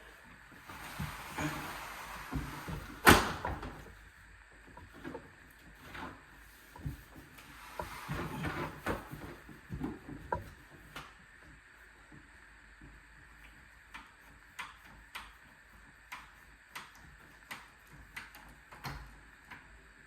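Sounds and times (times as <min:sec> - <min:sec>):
window blind knocking and rustling: 0:00.5 - 0:04.0, 0:04.6 - 0:11.3.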